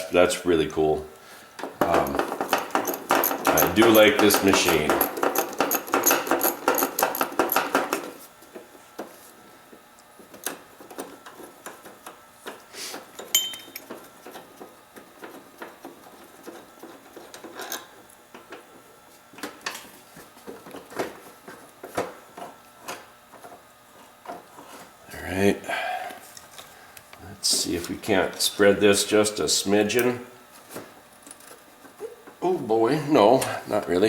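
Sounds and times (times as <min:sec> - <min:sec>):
hand tools clicking and clinking: 0:01.6 - 0:08.1, 0:10.4 - 0:18.5.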